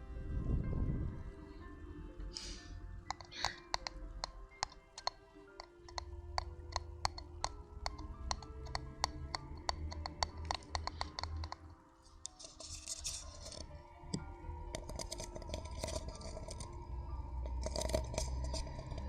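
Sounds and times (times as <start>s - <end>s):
soft music with held notes: 0.0s - 19.0s
close taps and clicks: 3.1s - 16.7s.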